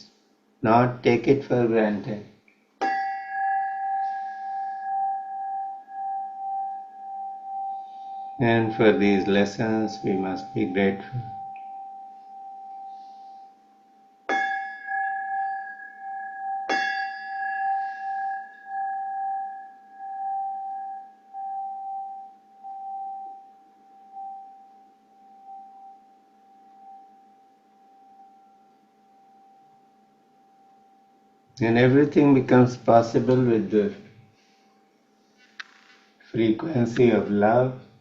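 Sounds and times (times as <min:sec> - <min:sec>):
singing bowl ringing: 0:02.8 - 0:33.5.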